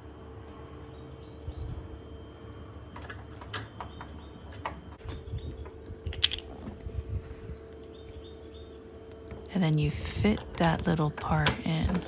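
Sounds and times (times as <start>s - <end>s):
faint steady hum: 0.0s - 12.0s
metal deadbolt parts clicking: 6.1s - 6.6s, 10.2s - 12.0s.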